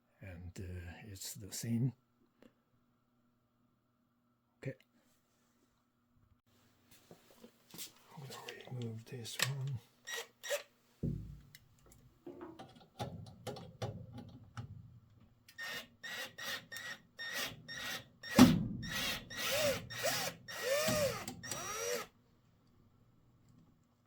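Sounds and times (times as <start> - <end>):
cordless drill bursts: 10.1 - 10.6, 15.6 - 22.1.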